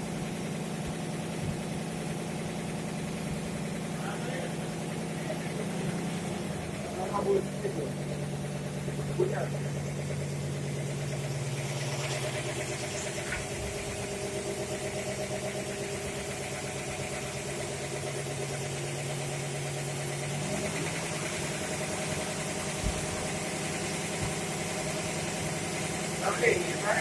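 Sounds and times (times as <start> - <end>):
fire pump engine running: 0.0 - 27.0.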